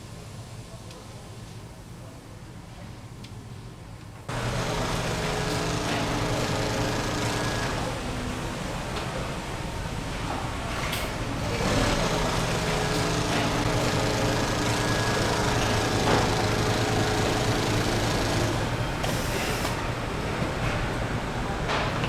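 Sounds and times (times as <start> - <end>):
factory machinery humming: 4.3 - 21.5.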